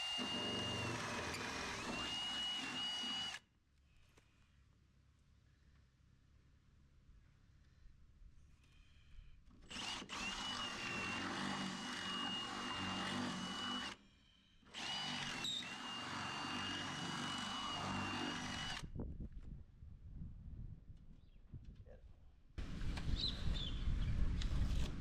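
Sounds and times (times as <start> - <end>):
power drill whining: 0.0 - 3.4, 9.7 - 18.8.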